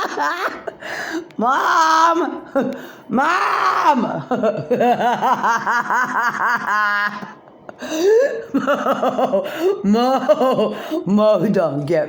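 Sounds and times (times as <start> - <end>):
person laughing hard: 0.0 - 1.0, 2.5 - 10.8.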